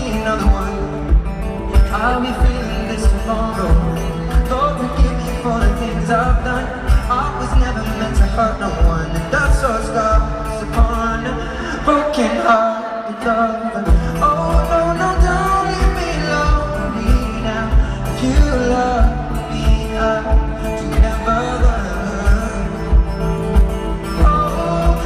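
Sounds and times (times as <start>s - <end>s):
live pop song over loudspeakers: 0.0s - 25.0s.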